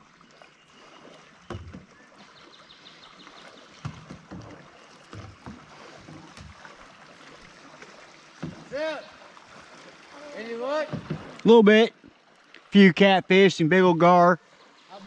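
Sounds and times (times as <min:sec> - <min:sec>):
boat hull knocking and splashing: 0:00.7 - 0:13.5.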